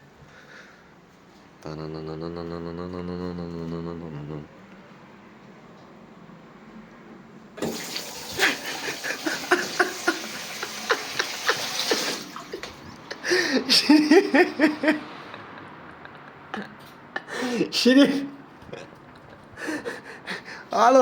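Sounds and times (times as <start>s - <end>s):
short pitched vocal sounds: 1.6s - 4.6s
water running and splashing: 7.6s - 12.8s.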